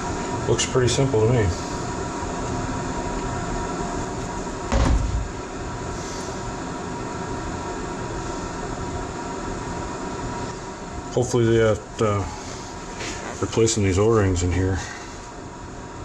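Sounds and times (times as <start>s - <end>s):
machinery humming: 0.0s - 16.0s
loud thump: 4.7s - 5.4s.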